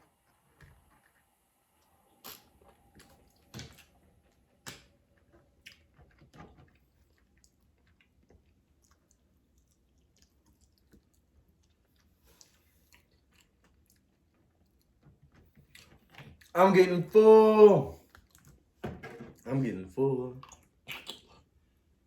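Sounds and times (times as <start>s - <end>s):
quiet chewing: 2.6s - 16.6s, 18.0s - 18.8s, 20.3s - 22.0s.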